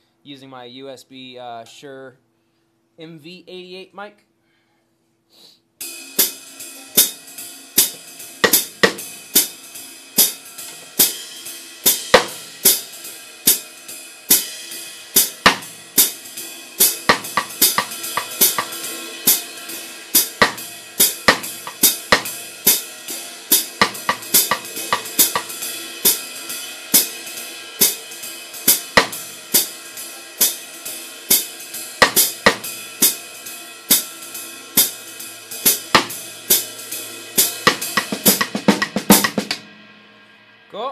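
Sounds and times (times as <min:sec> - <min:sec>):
ride cymbal jazz pattern: 0:05.8 - 0:40.9
hi-hats chicked shut: 0:16.8 - 0:19.6.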